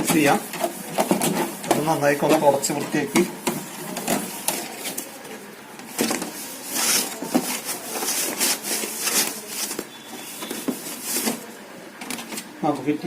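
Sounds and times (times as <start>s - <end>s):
rubbing and scraping strokes: 0.0s - 4.9s, 5.9s - 11.5s.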